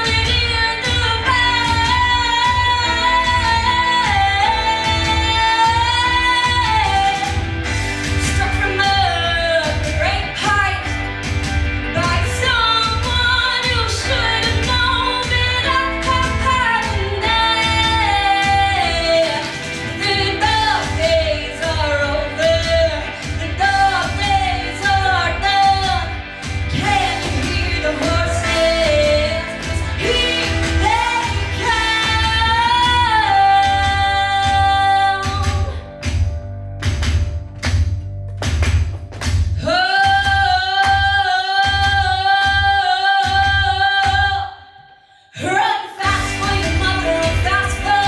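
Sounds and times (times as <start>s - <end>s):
woman singing: 0.0s - 11.0s, 11.9s - 35.9s, 39.6s - 48.0s
drum and bass beat: 0.0s - 44.3s, 46.0s - 48.0s
pop-rock song: 0.0s - 44.6s, 45.4s - 48.0s.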